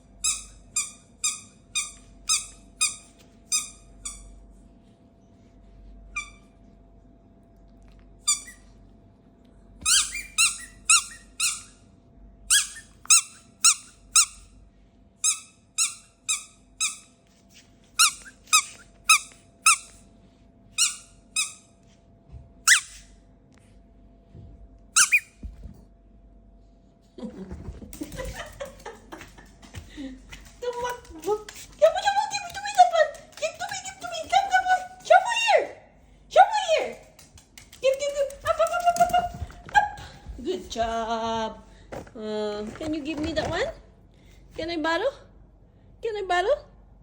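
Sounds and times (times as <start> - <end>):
squeaky dog toy squeaking: 0.2 - 4.3, 8.3 - 8.6, 9.8 - 11.8, 12.5 - 14.4, 15.2 - 17.1, 18.0 - 20.0, 20.8 - 21.6, 22.7 - 23.0, 25.0 - 25.4.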